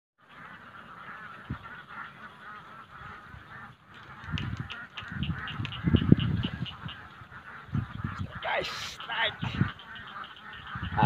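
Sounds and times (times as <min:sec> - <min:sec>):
chorus of animal calls: 0:00.2 - 0:11.0.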